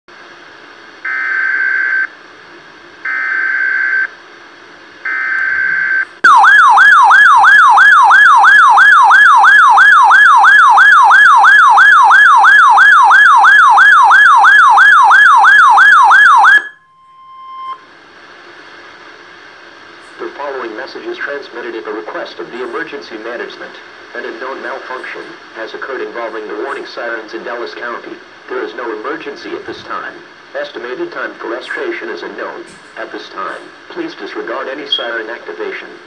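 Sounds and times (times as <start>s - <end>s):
warbling alert siren: 1.1s - 2.1s, 3.1s - 4.1s, 5.1s - 17.8s
faint radio hiss: 17.8s - 36.0s
data tone bursts: 34.9s - 35.2s.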